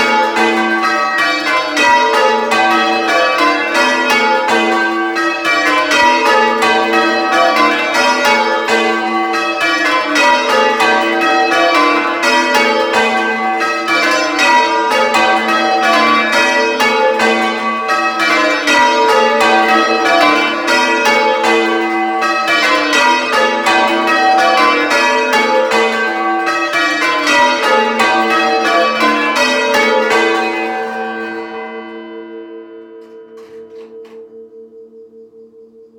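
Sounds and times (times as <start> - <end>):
church bells ringing: 0.0 - 35.9
bell hum: 33.0 - 35.9.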